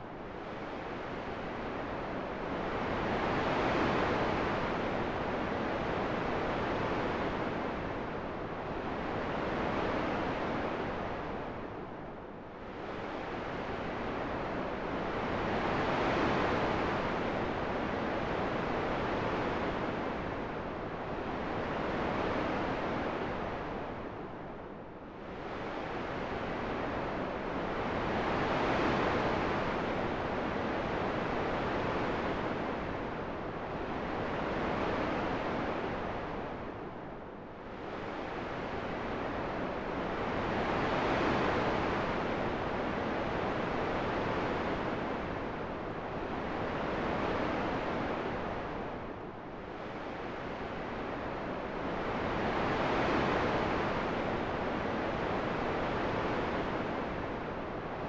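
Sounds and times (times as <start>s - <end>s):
wind rushing in gusts: 37.6s - 52.5s.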